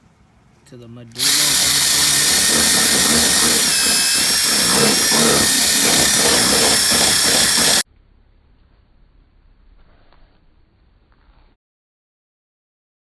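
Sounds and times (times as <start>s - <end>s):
power drill whining: 1.2s - 7.8s.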